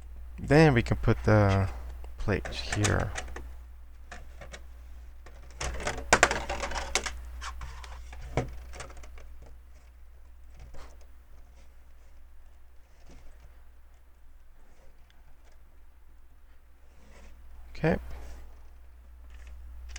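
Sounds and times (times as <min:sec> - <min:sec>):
steady low hum: 0:00.0 - 0:19.9
plastic bricks clicking: 0:05.3 - 0:09.6.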